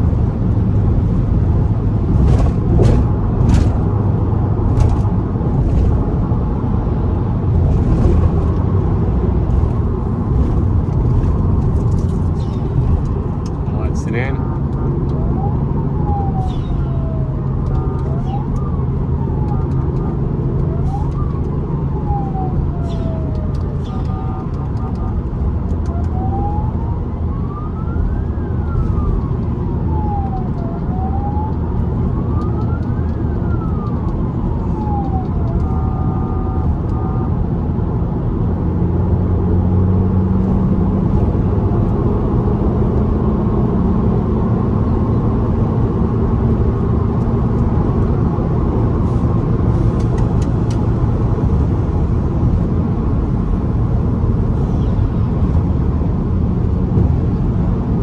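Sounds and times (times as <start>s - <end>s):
car engine and road noise: 0.0s - 58.0s
police siren wailing: 9.5s - 37.7s, 39.9s - 56.2s.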